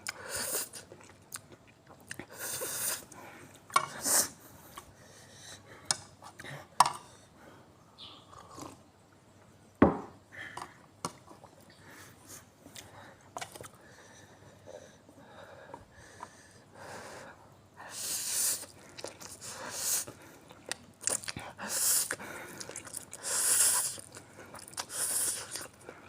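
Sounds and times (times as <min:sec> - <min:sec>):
breaths drawn through mouth: 0:21.0 - 0:25.8.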